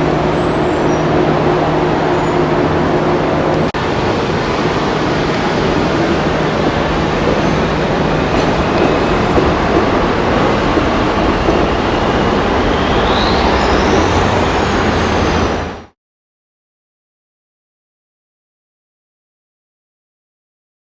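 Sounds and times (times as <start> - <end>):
subway train rumbling: 0.0 - 16.0
wheel squeal: 4.4 - 15.9.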